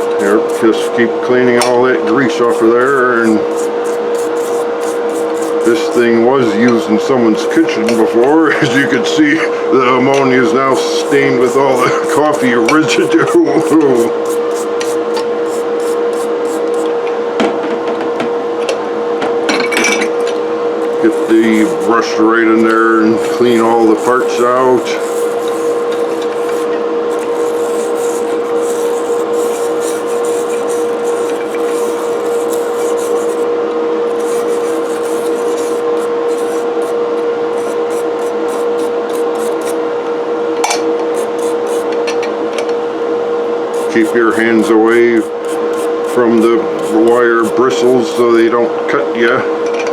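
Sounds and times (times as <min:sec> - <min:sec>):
brush scrubbing metal parts: 0:00.0 - 0:01.0, 0:02.3 - 0:06.1, 0:07.4 - 0:08.9, 0:10.7 - 0:16.9, 0:20.8 - 0:33.5, 0:34.1 - 0:39.8, 0:41.1 - 0:42.0, 0:43.7 - 0:48.4
steady hum: 0:00.0 - 0:01.2, 0:02.2 - 0:06.2, 0:10.4 - 0:16.9, 0:20.7 - 0:39.8, 0:41.1 - 0:42.0, 0:43.6 - 0:48.4.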